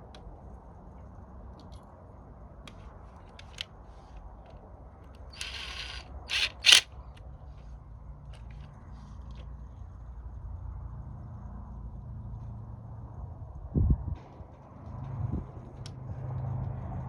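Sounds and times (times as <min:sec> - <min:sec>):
short rasp: 0:05.3 - 0:06.9
sharp strokes: 0:05.4 - 0:06.8.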